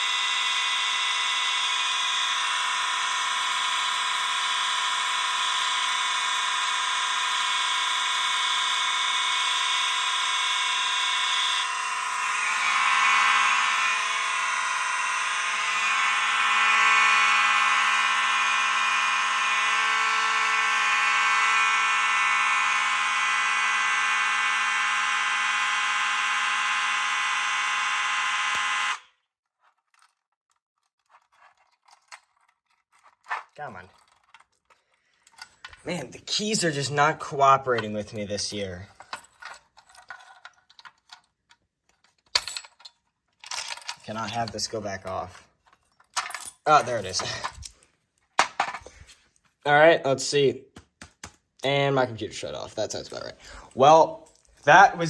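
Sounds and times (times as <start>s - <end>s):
fire alarm horns and bells: 16.8s - 29.1s.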